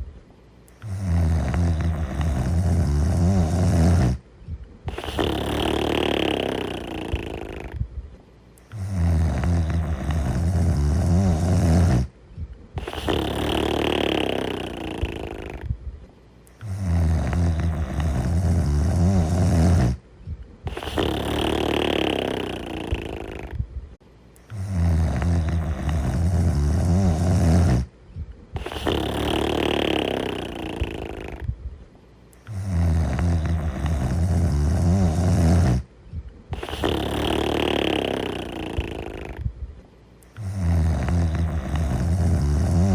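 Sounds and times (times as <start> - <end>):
person snoring: 0.8 - 4.2, 4.9 - 7.8, 8.6 - 12.2, 12.8 - 15.7, 16.5 - 20.0, 20.7 - 23.6, 24.4 - 27.9, 28.6 - 31.5, 32.4 - 35.9, 36.5 - 39.6, 40.3 - 42.9
breathy hissing breath: 8.6 - 12.1, 16.5 - 20.0, 20.7 - 23.6, 28.6 - 31.5, 32.4 - 35.9, 36.5 - 39.5, 40.2 - 42.9.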